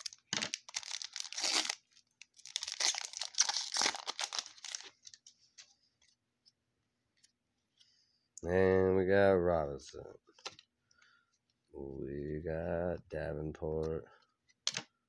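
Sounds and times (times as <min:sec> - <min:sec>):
foil wrapper tearing and crinkling: 0:00.0 - 0:05.2.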